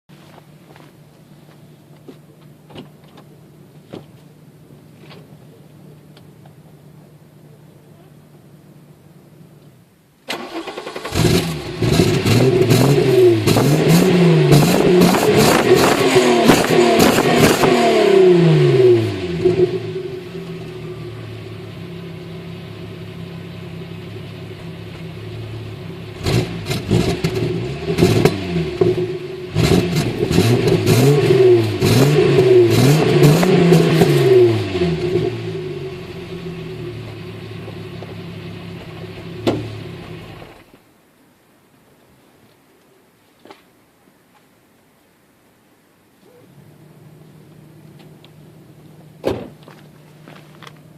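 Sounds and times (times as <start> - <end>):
car engine idling: 18.3 - 30.9, 31.6 - 40.8.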